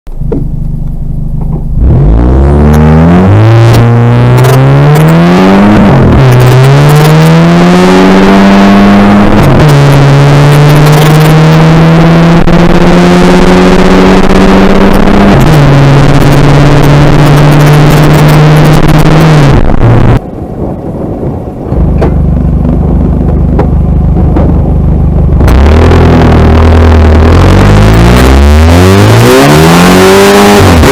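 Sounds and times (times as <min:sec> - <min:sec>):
car engine accelerating through gears: 0:00.1 - 0:20.2, 0:21.7 - 0:30.9.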